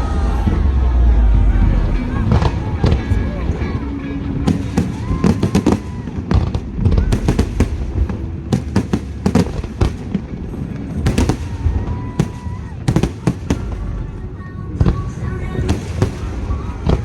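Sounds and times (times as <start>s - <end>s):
fireworks crackling: 2.2s - 17.0s
fireworks bangs and booms: 4.3s - 17.0s.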